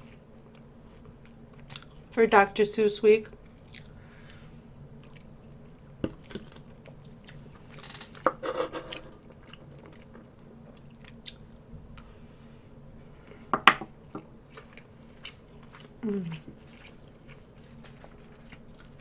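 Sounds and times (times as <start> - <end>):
person chewing food: 0.0 - 2.1, 3.4 - 8.2, 9.2 - 12.3, 14.4 - 19.0.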